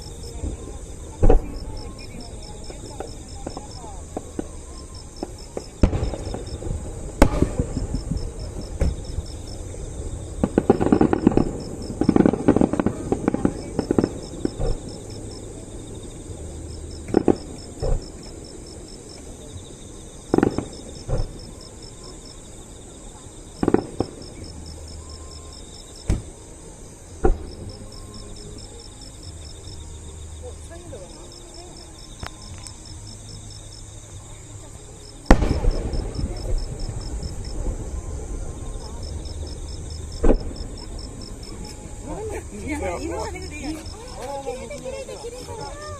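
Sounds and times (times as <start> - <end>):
fireworks bangs: 0.0 - 15.3, 20.3 - 21.6, 23.6 - 24.5, 35.2 - 42.8
crickets chirping: 0.0 - 45.9.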